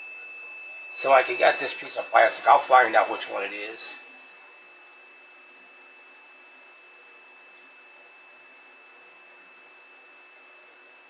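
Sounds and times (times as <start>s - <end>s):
multimeter continuity beep: 0.0s - 11.0s
small click: 4.8s - 5.6s, 7.5s - 7.8s.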